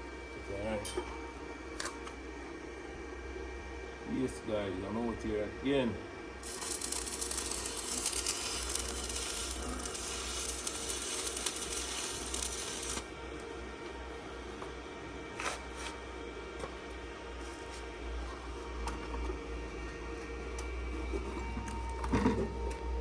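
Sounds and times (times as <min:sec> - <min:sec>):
power tool hissing on steel pipe: 0:06.4 - 0:13.1.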